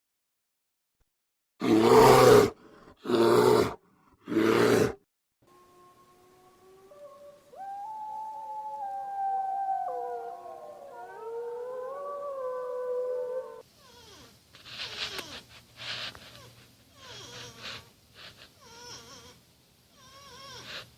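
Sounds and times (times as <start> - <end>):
canids howling together: 5.5 - 13.6.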